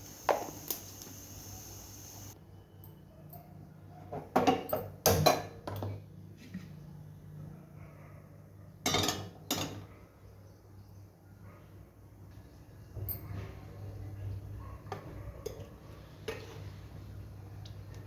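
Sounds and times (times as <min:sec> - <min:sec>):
dishes clinking: 0:08.8 - 0:09.9.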